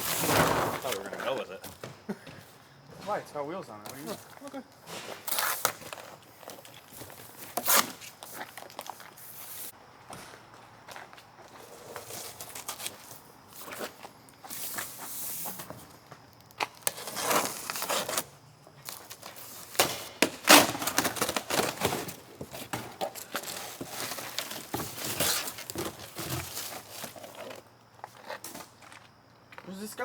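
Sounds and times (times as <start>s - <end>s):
packaging tearing and rustling: 5.2s - 9.2s, 16.7s - 18.2s, 18.8s - 27.6s.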